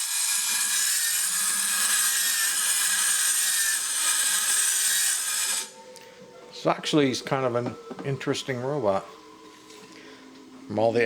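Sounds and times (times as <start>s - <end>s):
small motor and gears whirring: 0.0s - 5.7s
toy robot rasping screech: 0.0s - 5.7s.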